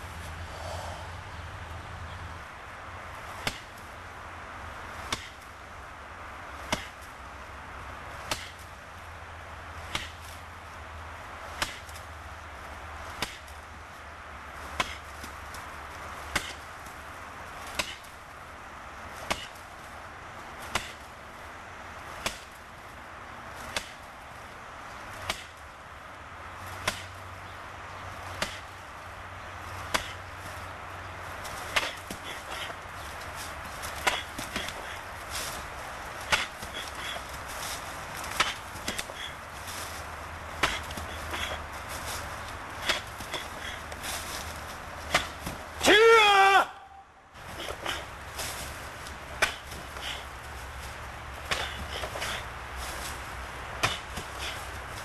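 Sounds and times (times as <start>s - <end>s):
steady background hiss: 0.0s - 55.0s
sharp blows striking wood: 3.4s - 3.8s, 5.0s - 5.4s, 6.6s - 7.1s, 8.2s - 8.7s, 9.9s - 10.4s, 11.5s - 12.0s, 13.1s - 13.6s, 14.7s - 15.3s, 16.3s - 16.6s, 17.6s - 18.1s, 19.2s - 19.6s, 20.6s - 21.1s, 22.2s - 22.6s, 23.7s - 24.1s, 25.2s - 25.6s, 26.8s - 27.2s, 28.3s - 28.8s, 29.8s - 30.2s, 31.6s - 32.8s, 33.8s - 35.6s, 36.2s - 41.6s, 42.8s - 44.3s, 45.0s - 46.0s, 49.3s - 50.2s, 51.4s - 52.4s, 53.8s - 54.6s.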